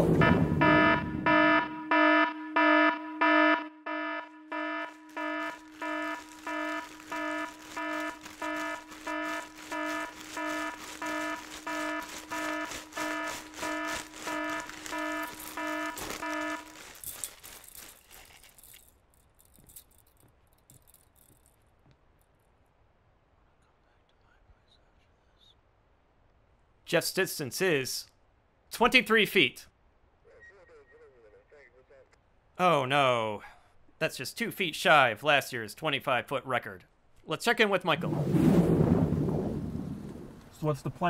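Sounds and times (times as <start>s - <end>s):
electronic alarm beeping: 0.0s - 16.8s.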